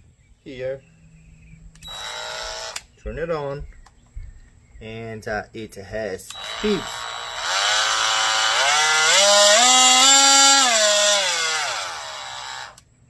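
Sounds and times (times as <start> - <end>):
oscillating multi-tool buzzing: 1.8 - 2.9, 6.3 - 12.8.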